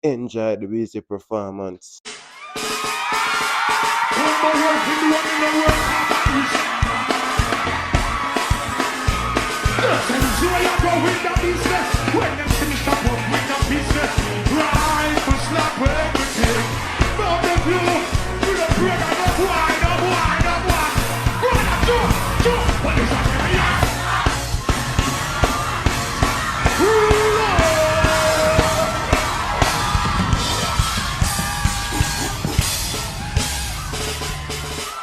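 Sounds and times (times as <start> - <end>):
dancehall bass and drums: 4.2 - 34.7
person shouting and singing: 9.7 - 24.0, 26.6 - 29.2.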